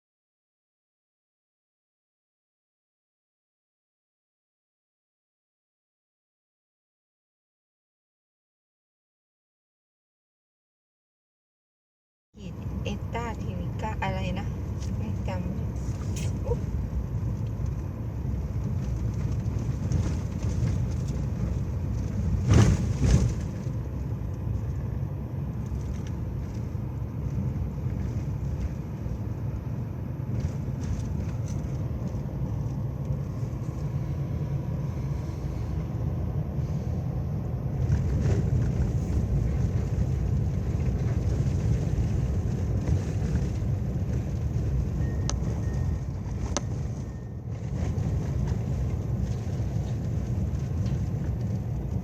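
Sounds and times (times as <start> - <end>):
low rumbling noise: 12.4 - 52.0.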